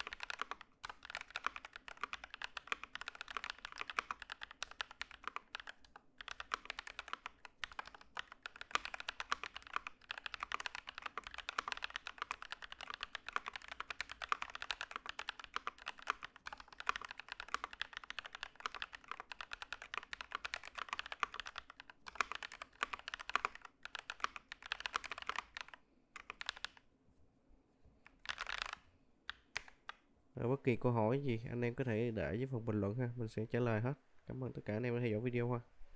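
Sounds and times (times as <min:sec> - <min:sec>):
mechanical keyboard typing: 0:00.0 - 0:26.8, 0:28.0 - 0:30.0.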